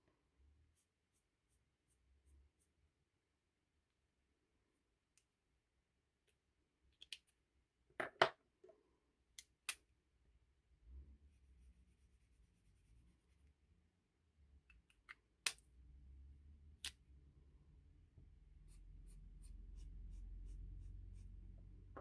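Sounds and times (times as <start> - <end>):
faint low rumble: 15.6 - 22.0.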